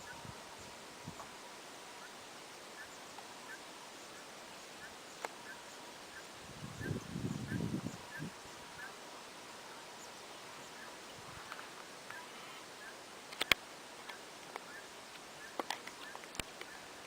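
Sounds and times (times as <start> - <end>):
sharp clicks: 13.3 - 16.7.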